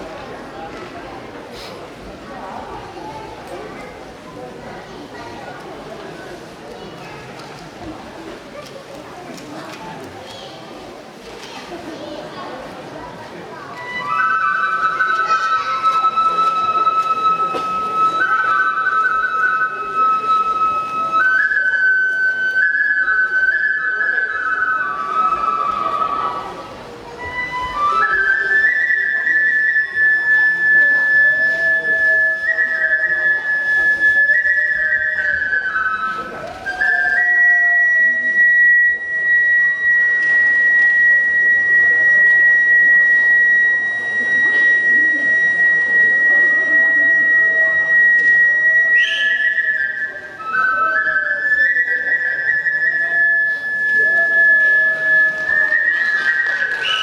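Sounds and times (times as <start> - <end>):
bamboo flute melody: 0.0 - 57.0.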